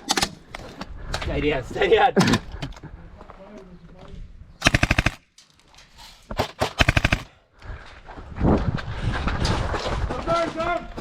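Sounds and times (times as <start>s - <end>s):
airsoft rifle full-auto bursts: 4.6s - 5.2s, 6.8s - 7.3s.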